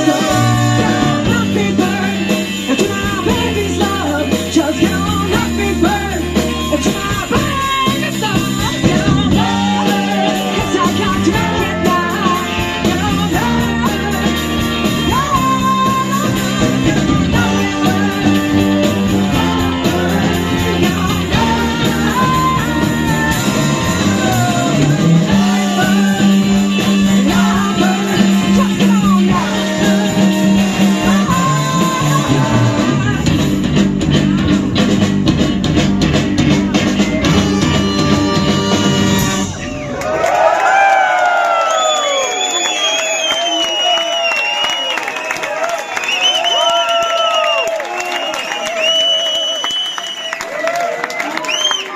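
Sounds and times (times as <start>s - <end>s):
lead vocals singing: 0.0s - 34.7s
live soul band playing: 0.0s - 40.1s.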